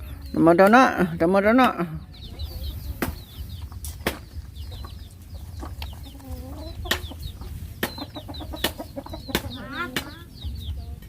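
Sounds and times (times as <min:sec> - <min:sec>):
chicks peeping: 0:00.0 - 0:11.0
chicken clucking: 0:01.5 - 0:11.0
sharp knocks: 0:04.0 - 0:04.4.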